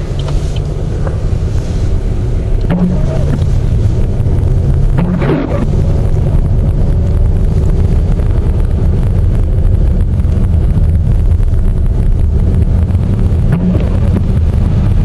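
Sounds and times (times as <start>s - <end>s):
vehicle rumble from inside cabin: 0.0s - 15.0s
wind noise: 0.0s - 15.0s.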